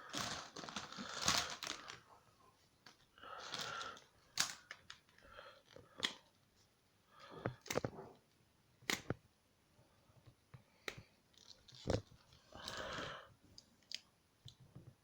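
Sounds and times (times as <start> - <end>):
packaging rustle: 0.0 - 2.0.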